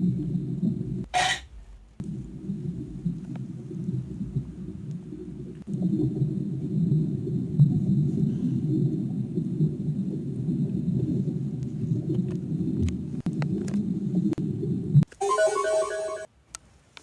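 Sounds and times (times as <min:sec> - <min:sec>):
low whale rumbling: 0:00.0 - 0:15.1.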